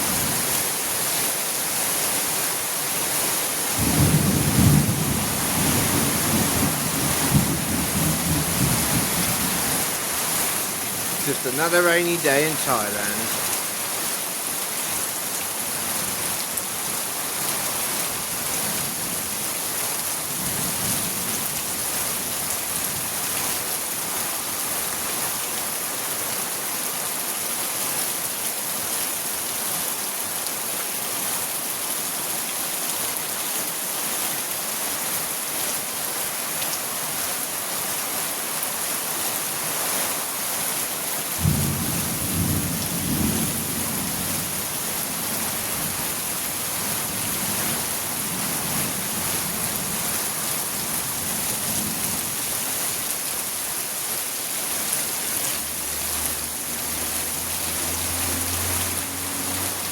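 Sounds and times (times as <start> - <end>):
steady rain falling: 0.0 - 59.9
low rumble of thunder: 3.8 - 9.4, 41.4 - 44.2.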